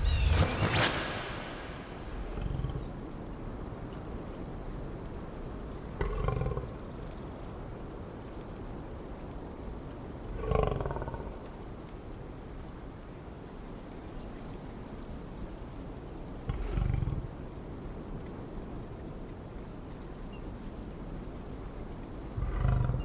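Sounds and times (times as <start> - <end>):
steady outdoor hiss: 0.0 - 23.0
large animal growling: 2.1 - 2.9, 16.5 - 17.4, 22.3 - 23.0.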